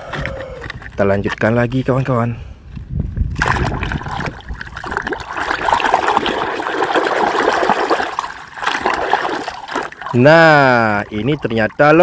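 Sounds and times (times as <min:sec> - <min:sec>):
muddy water splashing: 0:03.3 - 0:12.0.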